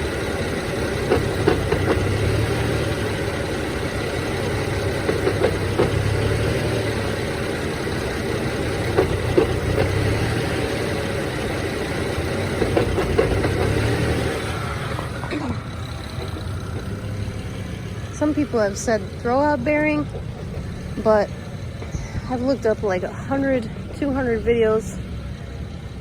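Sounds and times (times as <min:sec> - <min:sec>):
car engine idling roughly: 0:00.0 - 0:26.0
sharp clacking knocks: 0:00.9 - 0:02.4, 0:04.5 - 0:06.8, 0:08.7 - 0:10.2, 0:12.4 - 0:17.6.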